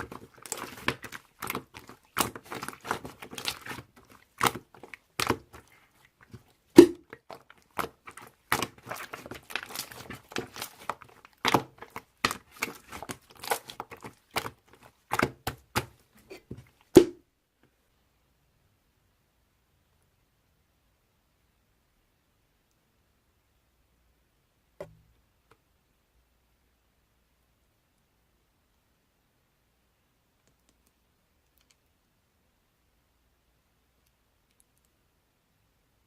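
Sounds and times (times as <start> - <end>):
clicks taps and crinkles: 0.0 - 17.8, 30.4 - 32.0, 34.0 - 35.0.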